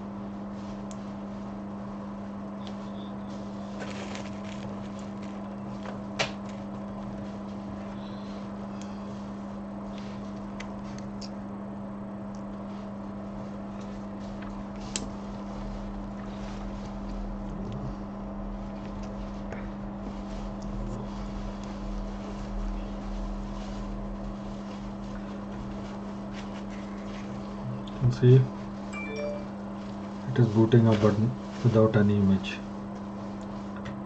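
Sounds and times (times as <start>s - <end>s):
low electrical hum: 0.0s - 34.0s.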